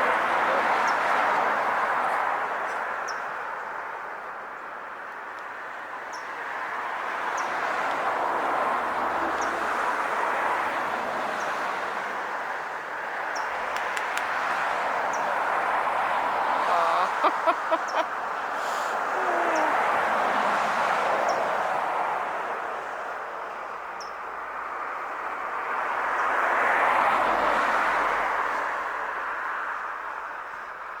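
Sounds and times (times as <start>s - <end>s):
passing traffic rushing: 6.5s - 23.7s.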